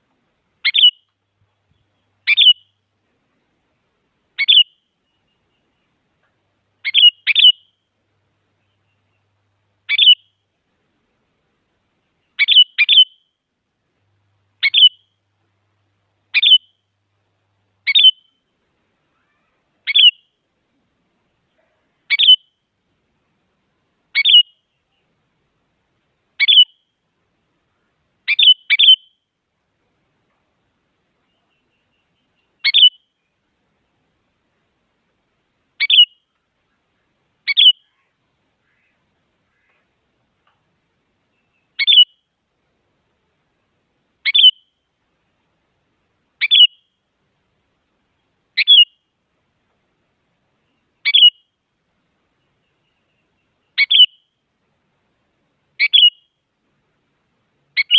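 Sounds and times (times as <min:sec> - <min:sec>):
bird giving sharp calls: 0:00.6 - 0:01.0, 0:02.2 - 0:02.7, 0:04.4 - 0:04.8, 0:06.8 - 0:07.7, 0:09.9 - 0:10.3, 0:12.4 - 0:13.2, 0:14.6 - 0:15.0, 0:17.8 - 0:18.3, 0:19.1 - 0:20.3, 0:22.1 - 0:22.5, 0:24.2 - 0:24.5, 0:26.4 - 0:26.8, 0:28.3 - 0:29.1, 0:32.6 - 0:33.1, 0:35.8 - 0:36.2, 0:37.5 - 0:39.8, 0:41.8 - 0:42.2, 0:44.3 - 0:44.6, 0:46.4 - 0:46.8, 0:48.6 - 0:49.0, 0:51.0 - 0:51.4, 0:53.8 - 0:54.2, 0:55.8 - 0:56.3.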